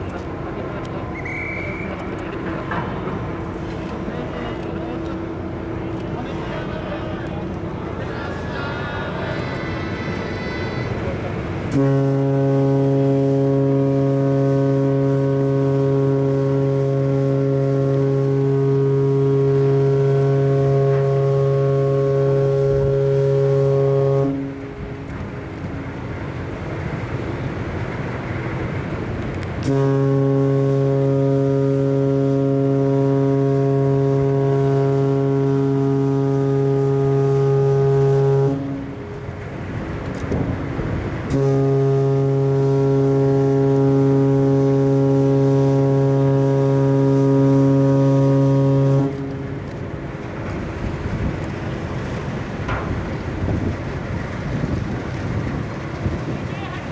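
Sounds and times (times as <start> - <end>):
deep ship's whistle blasts: 1.1 - 2.2, 11.7 - 25.9, 29.6 - 39.3, 41.3 - 49.8.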